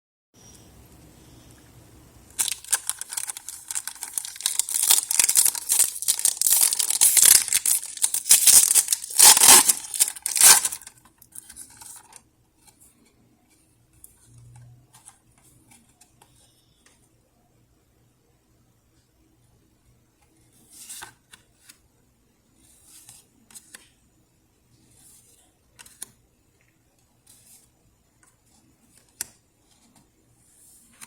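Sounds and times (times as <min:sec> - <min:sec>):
foil wrapper tearing and crinkling: 0:02.4 - 0:10.9.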